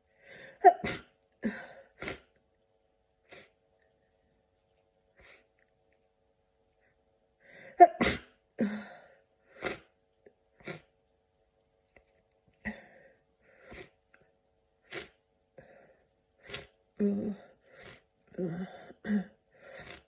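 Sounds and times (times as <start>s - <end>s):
person sneezing: 0.6s - 1.1s, 7.8s - 8.4s.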